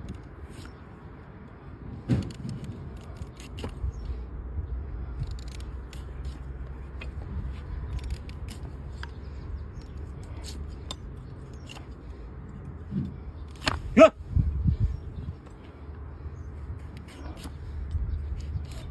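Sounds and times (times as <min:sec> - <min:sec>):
steady low rumble: 0:00.0 - 0:18.9
knife crunching through hoof: 0:13.5 - 0:14.1, 0:16.8 - 0:18.9.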